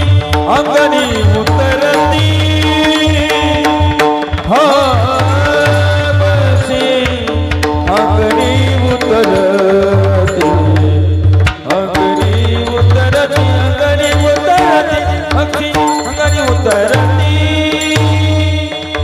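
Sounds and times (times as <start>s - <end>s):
hand drum beat: 0.0s - 19.0s
person singing ornamented notes: 8.0s - 19.0s.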